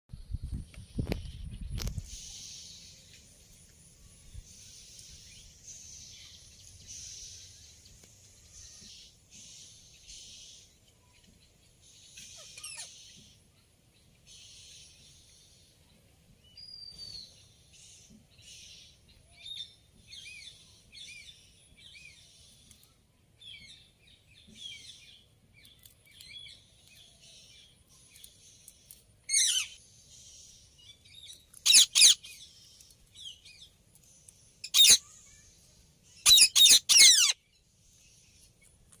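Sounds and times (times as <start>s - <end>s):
parrot screeching: 31.6s - 32.2s, 34.7s - 35.0s, 36.2s - 37.4s
parrot chattering: 34.7s - 35.0s, 36.2s - 37.4s.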